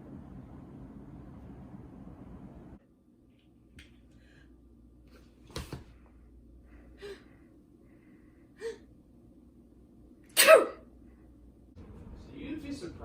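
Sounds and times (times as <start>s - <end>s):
person gasping breaths: 6.6s - 8.9s
person sneezing: 10.4s - 10.8s.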